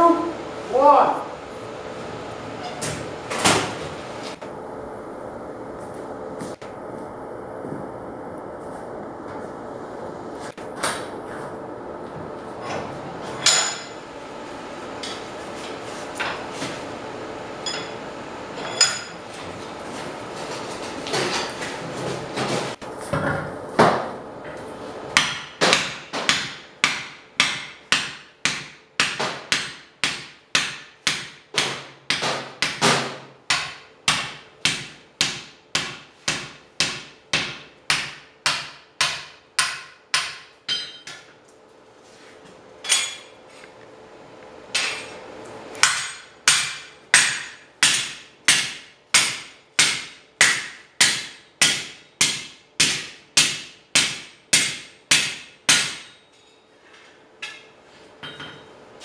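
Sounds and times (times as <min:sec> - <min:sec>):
hammer ringing on steel plate: 0:38.0 - 0:41.2.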